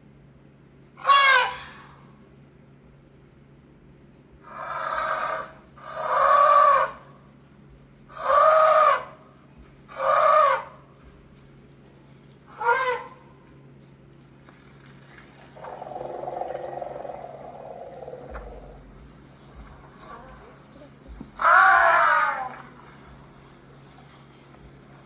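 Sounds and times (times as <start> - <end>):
animal calls: 4.5 - 7.1, 8.1 - 9.2, 9.9 - 10.9, 12.5 - 13.4, 15.5 - 24.9.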